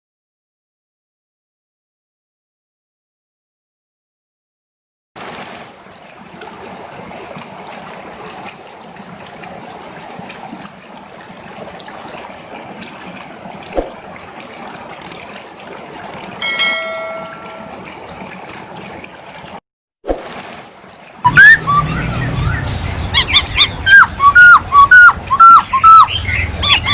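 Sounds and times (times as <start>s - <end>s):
rushing stream-like water: 5.2s - 26.9s
bell-like chime: 16.4s - 17.8s.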